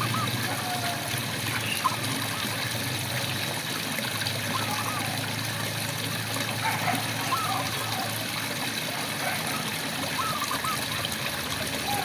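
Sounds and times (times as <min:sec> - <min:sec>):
frogs warbling calls: 0:00.0 - 0:02.6, 0:04.4 - 0:05.4, 0:06.6 - 0:12.0.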